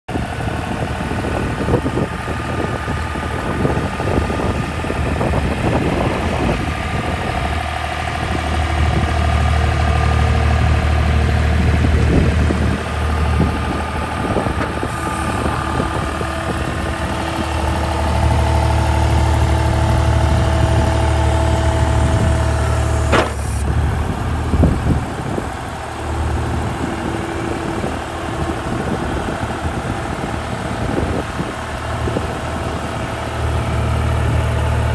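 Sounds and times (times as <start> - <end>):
diesel engine running: 0.1 - 34.9
steady whining tones: 0.3 - 34.9
sharp knock: 23.1 - 23.6.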